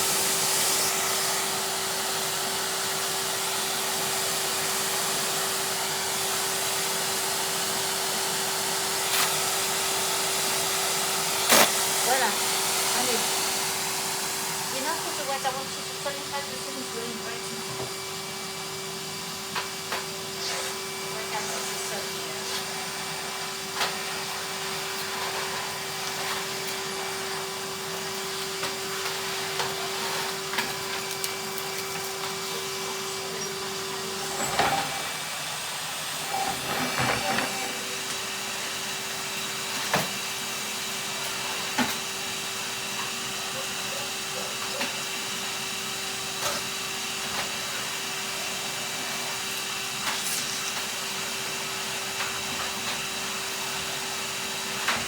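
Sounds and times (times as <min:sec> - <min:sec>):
vacuum cleaner running: 0:00.0 - 0:55.0
vacuum tool knocking on surfaces: 0:17.6 - 0:18.0.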